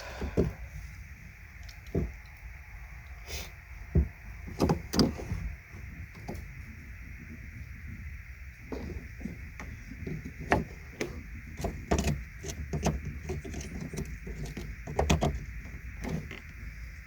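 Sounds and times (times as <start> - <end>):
small clicks taps and knocks: 8.7 - 16.6.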